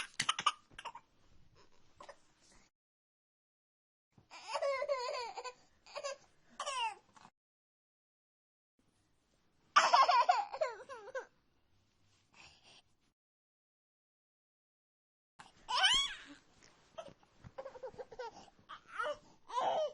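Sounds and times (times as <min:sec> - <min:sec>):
young child laughing: 0:00.0 - 0:00.6.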